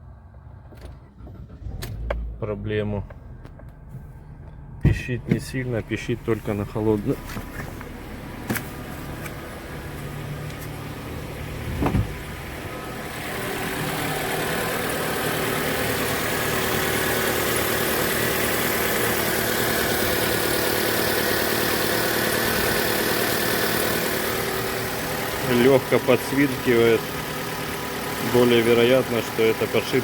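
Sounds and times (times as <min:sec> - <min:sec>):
car engine starting and idling: 0:00.0 - 0:30.0.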